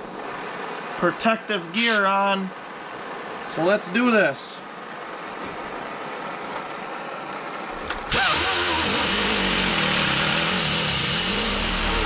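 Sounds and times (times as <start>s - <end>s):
pneumatic grinder whining: 7.8s - 12.0s.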